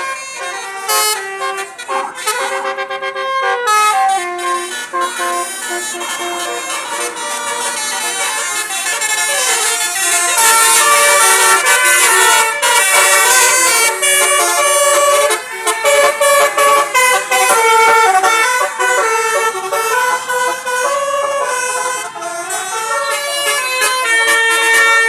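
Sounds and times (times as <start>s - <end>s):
bus air horn playing a tune: 0.0s - 25.0s.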